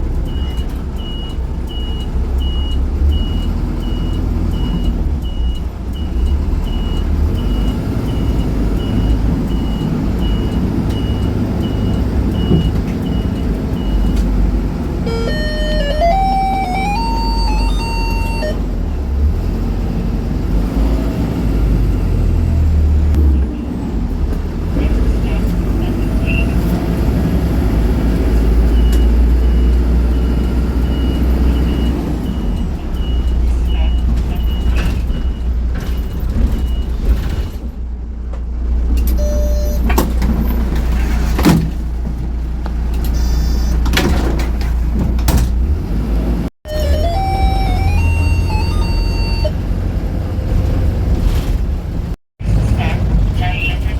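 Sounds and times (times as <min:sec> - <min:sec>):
bus engine rumbling: 0:00.0 - 0:53.9
bus door mechanism clunks: 0:12.2 - 0:13.4, 0:39.0 - 0:41.9, 0:43.0 - 0:45.7
electronic chime tune: 0:15.1 - 0:18.8, 0:46.7 - 0:49.6
high warning beep: 0:15.1 - 0:18.8, 0:39.2 - 0:40.0, 0:43.1 - 0:43.8, 0:46.7 - 0:49.6.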